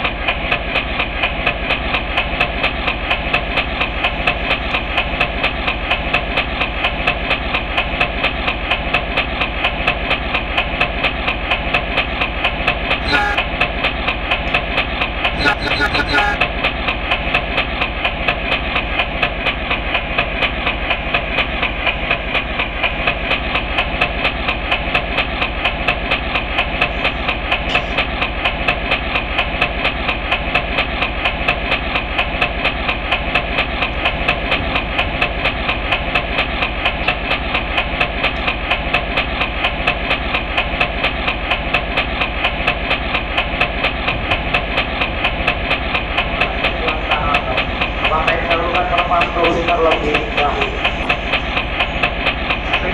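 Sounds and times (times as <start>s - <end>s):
railroad crossing bell ringing: 13.0s - 13.4s.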